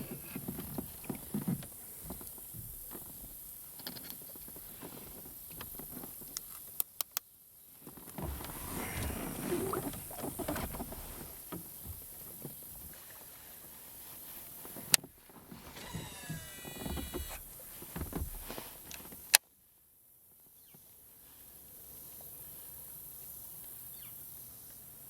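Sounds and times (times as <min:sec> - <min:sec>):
gear knocking and rustling: 0:07.8 - 0:13.0, 0:14.6 - 0:19.3.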